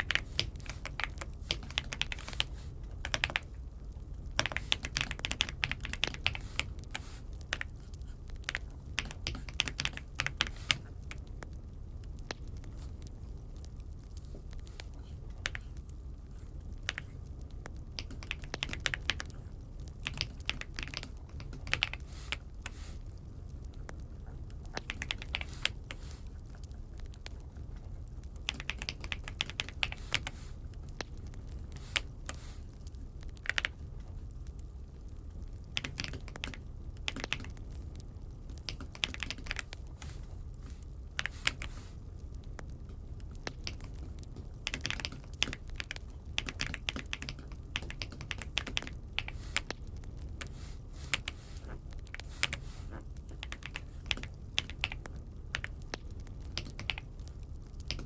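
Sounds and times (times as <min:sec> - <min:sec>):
low steady hum: 0:00.0 - 0:58.0.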